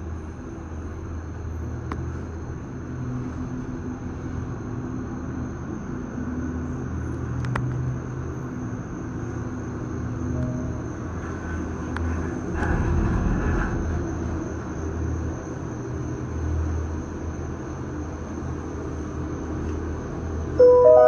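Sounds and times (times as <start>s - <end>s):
faint steady high whine: 0.0s - 12.8s, 13.4s - 21.0s
clear musical tones: 20.6s - 21.0s.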